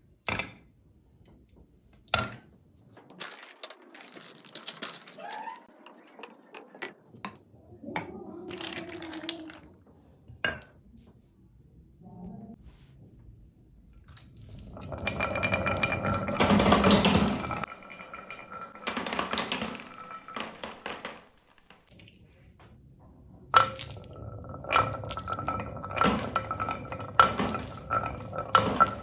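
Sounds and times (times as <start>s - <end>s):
marbles rolling down a track: 3.1s - 6.9s, 8.5s - 9.7s, 14.2s - 21.8s, 23.6s - 29.0s.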